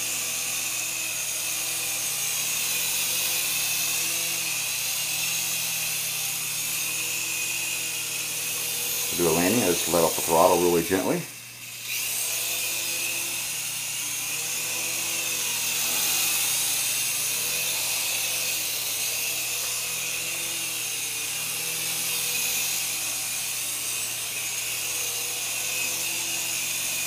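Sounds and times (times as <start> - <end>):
toy helicopter rotors whirring: 0.0 - 27.0.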